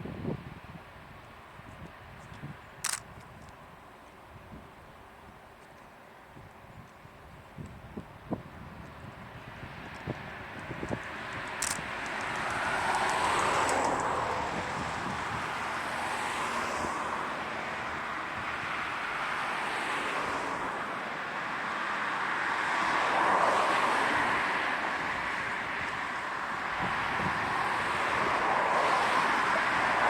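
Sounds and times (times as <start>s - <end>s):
wheels rumbling on rail: 1.7s - 17.2s.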